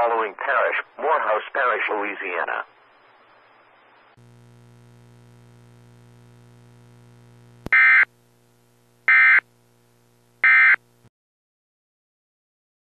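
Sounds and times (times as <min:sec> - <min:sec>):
faint line hum: 0:02.5 - 0:11.1.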